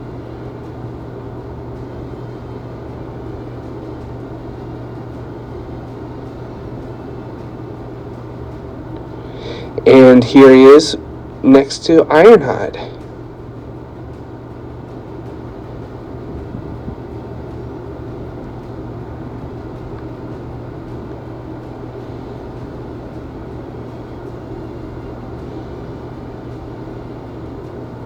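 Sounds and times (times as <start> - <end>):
steady low hum: 0.0 - 28.0
room noise hiss: 9.0 - 13.1.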